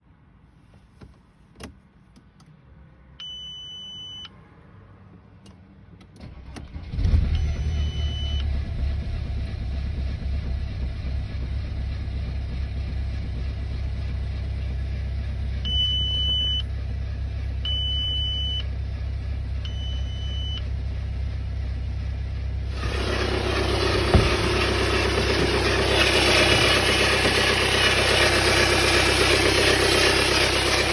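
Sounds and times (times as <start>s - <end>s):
dashboard warning chimes beeping: 3.2s - 4.3s, 7.4s - 8.4s, 15.6s - 16.7s, 17.6s - 18.7s, 19.6s - 20.6s
diesel engine idling: 6.8s - 30.9s.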